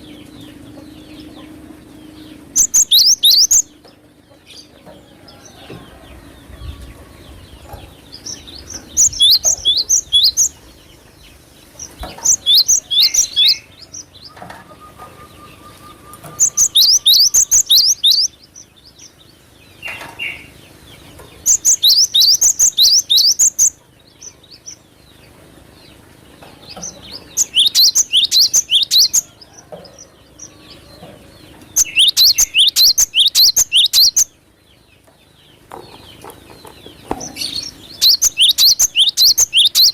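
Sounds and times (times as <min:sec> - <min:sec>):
bird singing sharp high notes: 0:14.6 - 0:18.3.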